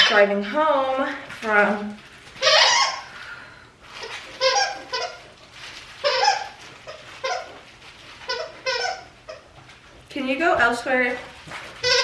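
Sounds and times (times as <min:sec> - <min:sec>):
dog whining: 0:02.4 - 0:03.1, 0:04.0 - 0:05.4, 0:06.0 - 0:09.6.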